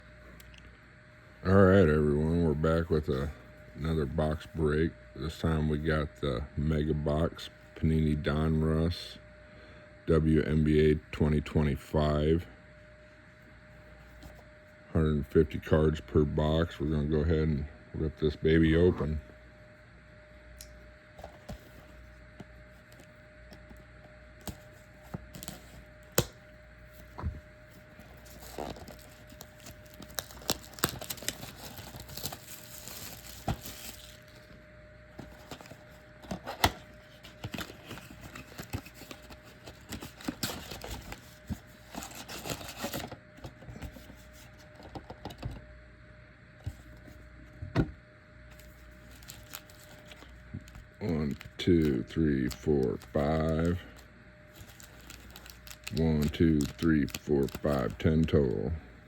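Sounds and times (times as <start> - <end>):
card packs tapping and clicking: 24.4 - 26.4, 35.2 - 44.1, 54.5 - 58.1
plastic wrapping crinkling: 27.9 - 34.6, 35.2 - 43.0, 48.5 - 51.5, 54.5 - 57.9
cardboard box ripping open: 30.1 - 34.0.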